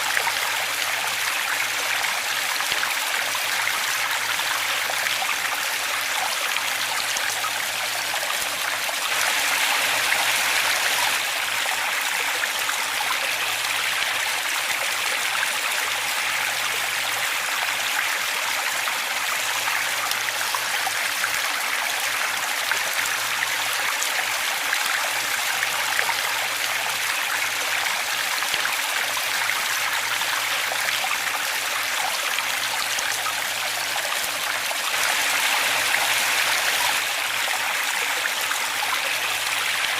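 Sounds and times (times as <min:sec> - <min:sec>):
waterfall rushing: 0:06.7 - 0:13.2, 0:34.3 - 0:39.9.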